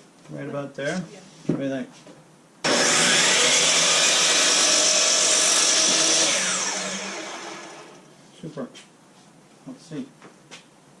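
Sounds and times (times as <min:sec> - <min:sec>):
electric power saw cutting board: 0:02.6 - 0:08.1.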